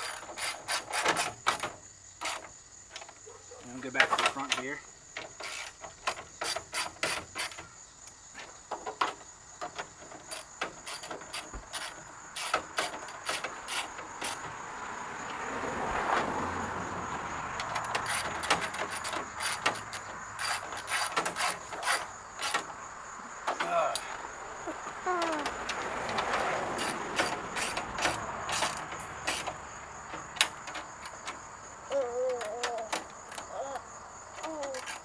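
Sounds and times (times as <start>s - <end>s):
hand ratchet clicking: 17.7s - 22.7s, 26.8s - 29.6s.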